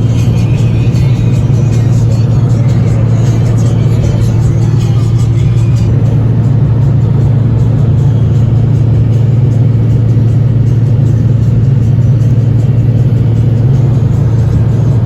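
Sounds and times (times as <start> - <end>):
vehicle interior road drone: 0.0 - 15.0.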